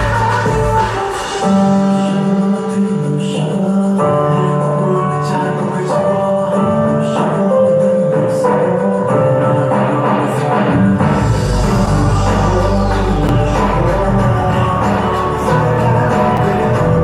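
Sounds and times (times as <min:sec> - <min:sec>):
deep bass: 0:00.0 - 0:01.1, 0:09.7 - 0:17.0
pop song with chords and percussion: 0:00.0 - 0:17.0.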